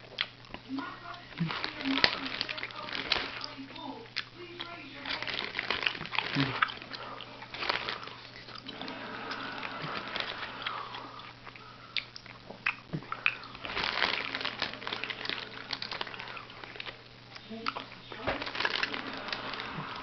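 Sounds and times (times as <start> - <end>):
person chewing sweets: 0.0 - 20.0
sharp crackles and clicks: 5.0 - 8.7.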